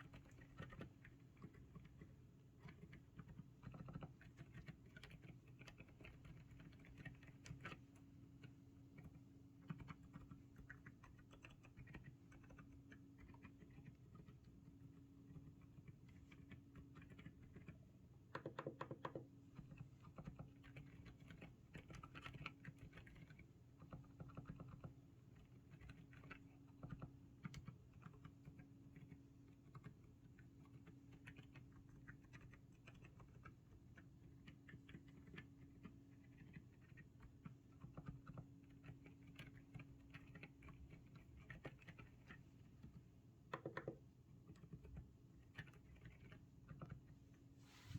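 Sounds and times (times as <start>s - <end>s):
soft keyboard keystrokes: 0.0s - 47.9s.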